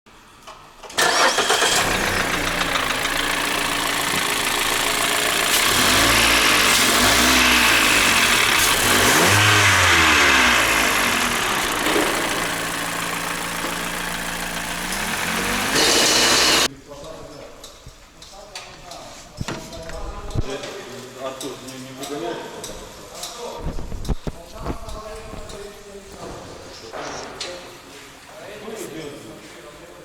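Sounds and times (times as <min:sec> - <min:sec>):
car engine revving and idling: 0:01.0 - 0:16.7
engine knock: 0:01.1 - 0:16.7.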